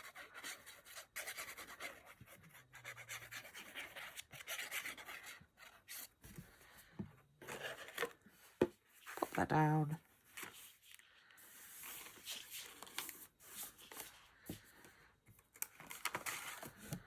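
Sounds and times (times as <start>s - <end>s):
paper handling: 11.8s - 14.7s.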